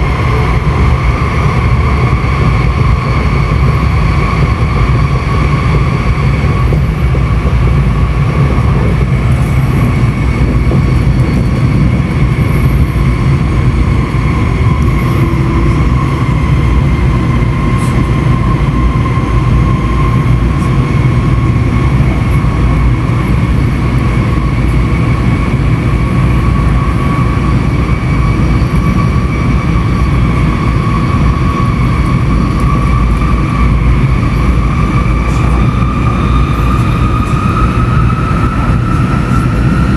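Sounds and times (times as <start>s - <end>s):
train high whine: 0.0s - 39.9s
train low rumble: 0.0s - 39.9s.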